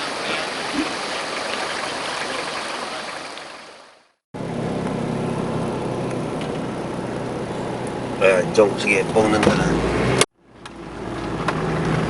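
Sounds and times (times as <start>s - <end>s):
vehicle engine starting and running: 4.4s - 12.0s.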